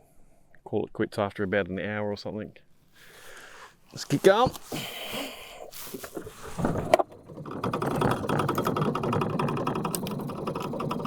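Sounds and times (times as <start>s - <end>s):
boat motor rattling: 6.2s - 11.0s.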